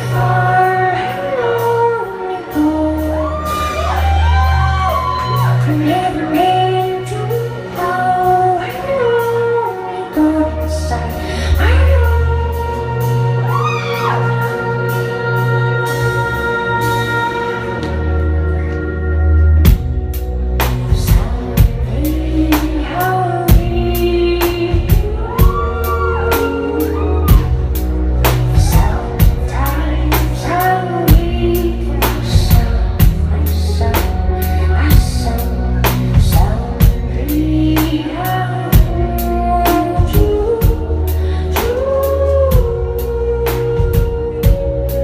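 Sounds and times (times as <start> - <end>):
woman singing: 0.0 - 18.7, 20.6 - 45.0
heavy bass: 0.0 - 45.0
drum kit beat: 19.6 - 45.0.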